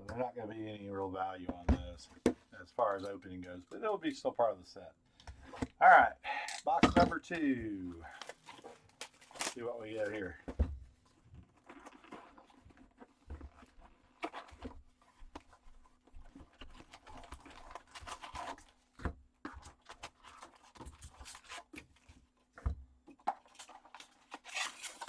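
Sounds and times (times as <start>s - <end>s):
foil packs crinkling: 7.3s - 10.4s, 23.3s - 25.0s
cardboard box tearing: 8.2s - 9.6s, 16.5s - 18.8s, 23.6s - 25.0s.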